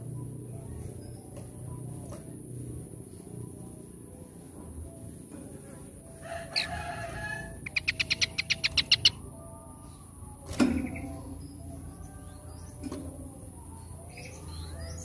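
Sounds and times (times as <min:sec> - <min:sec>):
bird calling sharp notes: 0:07.6 - 0:09.2.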